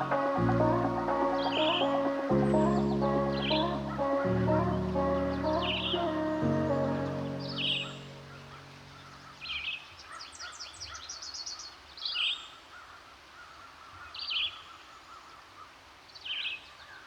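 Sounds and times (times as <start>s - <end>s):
birds chirping: 0.0s - 12.6s
faint steady hiss: 0.0s - 17.0s.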